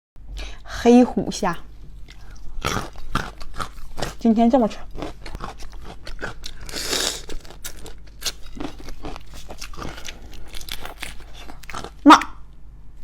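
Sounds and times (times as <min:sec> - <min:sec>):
shrimp being chewed: 0:02.0 - 0:04.2, 0:04.8 - 0:12.4.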